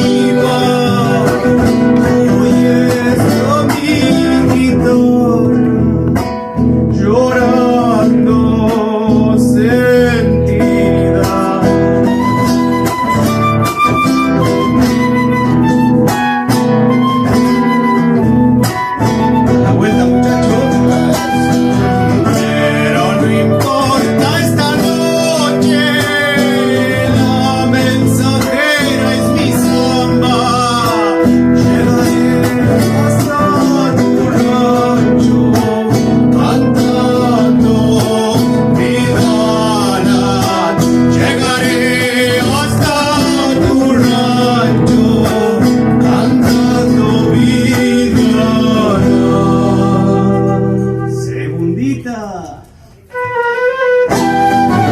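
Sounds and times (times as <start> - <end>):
acoustic guitars: 0.0 - 54.9
wavering melody line: 12.2 - 24.0.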